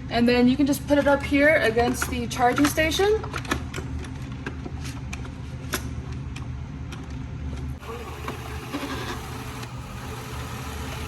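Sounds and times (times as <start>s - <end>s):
robot vacuum running: 7.8s - 11.0s.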